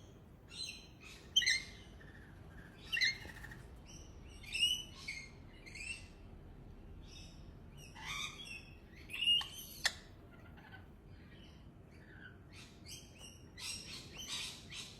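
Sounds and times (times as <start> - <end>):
lorikeet screeching chirps: 0.5 - 3.5, 7.8 - 14.9.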